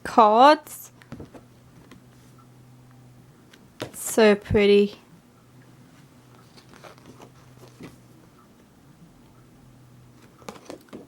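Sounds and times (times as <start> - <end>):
faint steady hum: 0.0 - 11.0
postcards shuffling and rustling: 6.3 - 8.1, 10.2 - 11.0.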